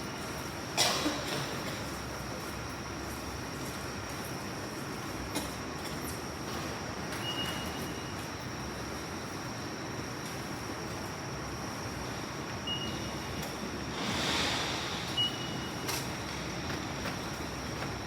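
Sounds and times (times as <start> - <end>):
faint high whine: 9.5 - 18.0
ticket gate beeps: 12.6 - 13.2, 15.2 - 16.0
brief hiss: 13.9 - 16.2.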